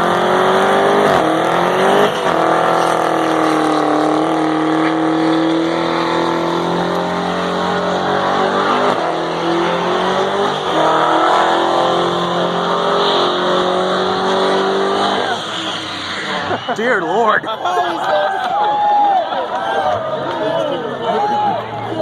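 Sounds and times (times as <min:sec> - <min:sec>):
car engine at high revs: 0:00.0 - 0:17.4
tire noise: 0:00.0 - 0:22.0.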